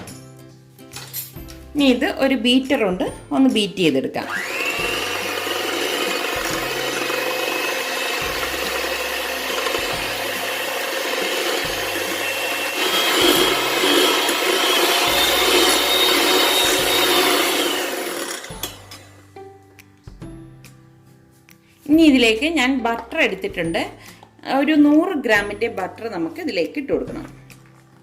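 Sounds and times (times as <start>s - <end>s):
electric hand mixer whining: 4.2s - 19.0s.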